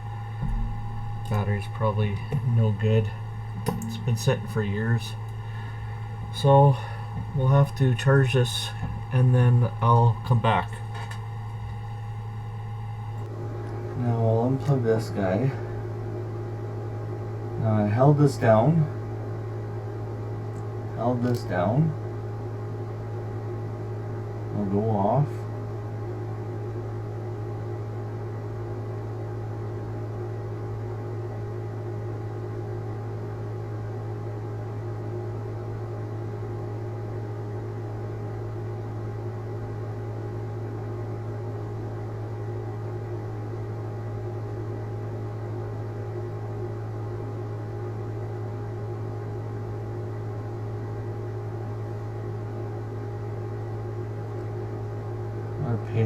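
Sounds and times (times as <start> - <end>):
steady electrical hum: 0.0 - 56.0.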